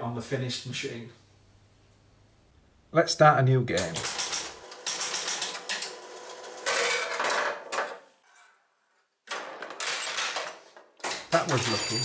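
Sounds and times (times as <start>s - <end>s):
score reels rattling: 3.8s - 7.7s, 9.4s - 12.0s
pinball relays clicking: 3.8s - 8.0s, 9.3s - 12.0s.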